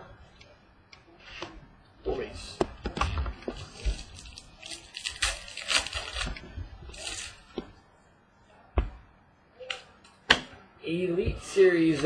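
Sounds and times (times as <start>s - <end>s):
foil wrapper crinkling and tearing: 3.5s - 7.5s.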